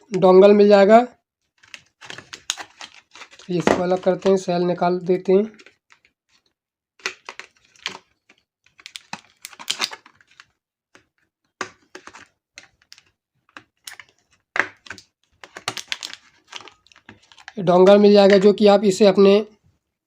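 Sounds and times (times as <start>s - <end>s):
packaging rustling: 1.5s - 18.6s
plastic parts clicking: 7.0s - 17.6s.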